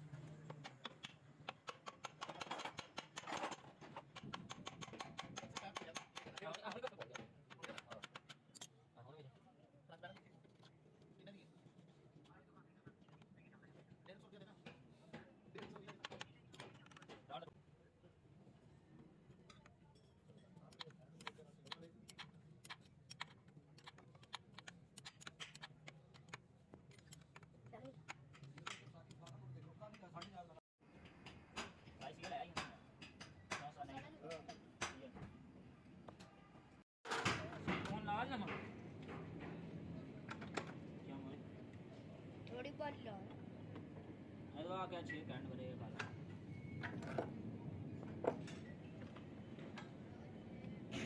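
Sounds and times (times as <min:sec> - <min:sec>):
light clicks and tool taps: 0:19.4 - 0:33.7.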